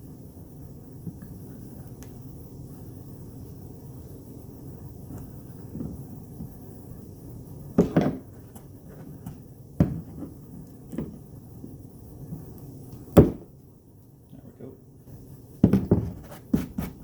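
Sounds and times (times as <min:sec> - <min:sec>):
objects knocking and clunking: 0:15.6 - 0:17.0.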